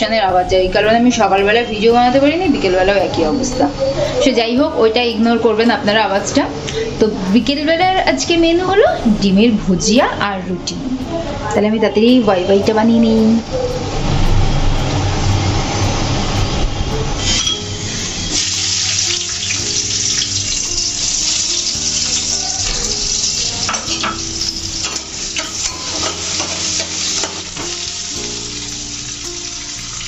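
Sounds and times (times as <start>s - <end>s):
noodles sizzling in a pan: 17.2s - 30.0s
utensil scraping a pan: 21.3s - 28.1s.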